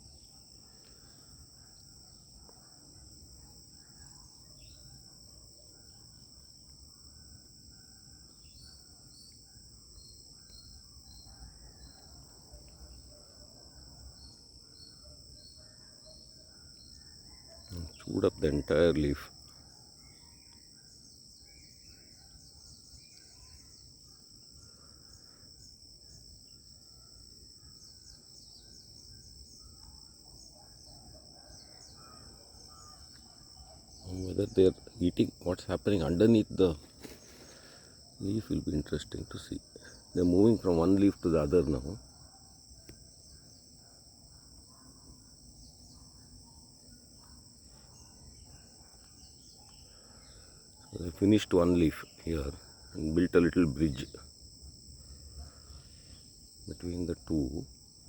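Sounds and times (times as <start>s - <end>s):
insects singing: 0.0s - 58.0s
faint bird calls: 29.6s - 35.2s.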